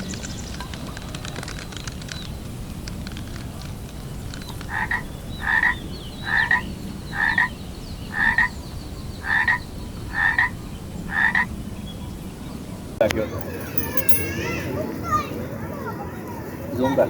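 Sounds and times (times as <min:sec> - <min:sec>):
frog croaking: 0:04.7 - 0:07.5, 0:08.1 - 0:08.5, 0:09.2 - 0:11.5.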